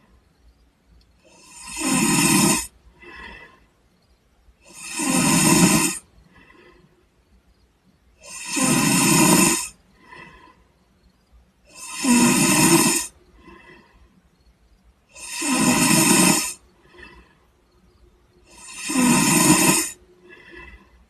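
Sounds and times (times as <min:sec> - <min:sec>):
person snoring: 0:01.2 - 0:03.6, 0:04.6 - 0:06.8, 0:08.2 - 0:10.6, 0:11.7 - 0:14.0, 0:15.1 - 0:17.4, 0:18.4 - 0:21.0
faint short breath: 0:20.2 - 0:21.0.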